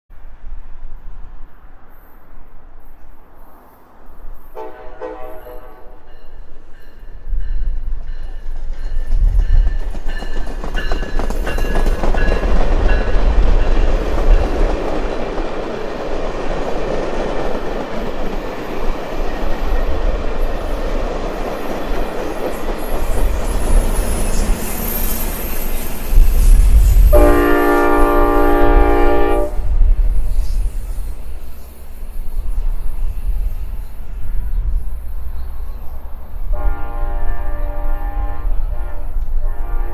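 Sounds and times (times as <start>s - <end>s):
train rumbling and clattering: 0.1s - 39.9s
train horn chord: 4.6s - 6.3s, 27.1s - 29.8s, 36.5s - 39.9s.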